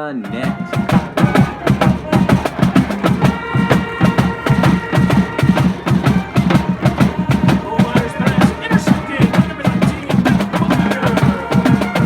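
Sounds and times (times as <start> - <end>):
sharp knocking percussive beat: 0.0 - 12.0
sustained high tones: 0.2 - 7.8.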